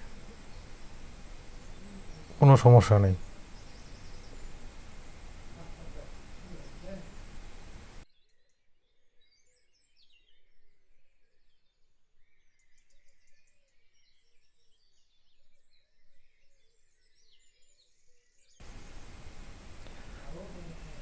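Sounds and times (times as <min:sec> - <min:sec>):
small birds chirping: 0:00.0 - 0:08.0, 0:18.6 - 0:21.0.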